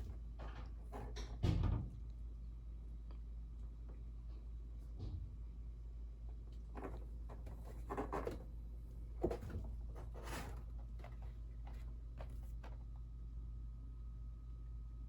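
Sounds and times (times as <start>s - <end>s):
scraping and rubbing: 6.8s - 8.5s, 9.2s - 12.5s.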